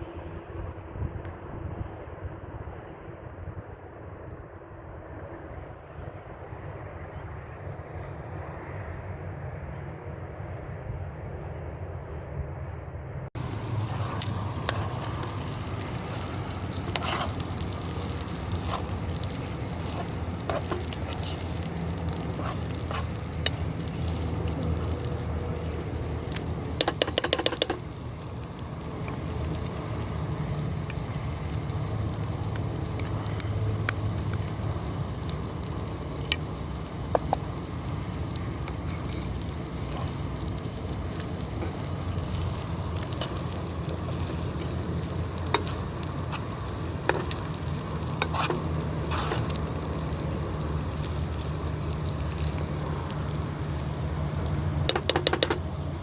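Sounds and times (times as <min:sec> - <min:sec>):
low rumble: 0:10.6 - 0:54.9
utensil clicks and scrapes: 0:13.4 - 0:29.8, 0:30.8 - 0:51.4, 0:54.5 - 0:56.0
food sizzling in a pan: 0:13.4 - 0:56.0.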